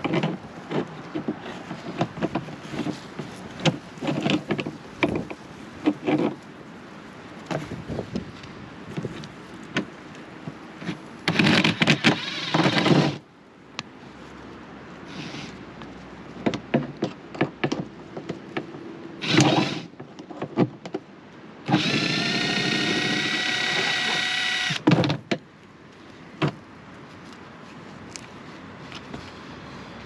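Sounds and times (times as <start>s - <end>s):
power drill running: 11.3s - 13.1s, 19.2s - 19.8s, 21.7s - 24.8s.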